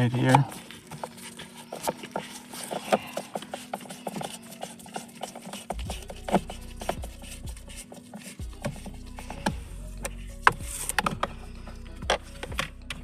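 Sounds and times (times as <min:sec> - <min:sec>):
hand tools clicking and knocking: 0:00.0 - 0:13.0.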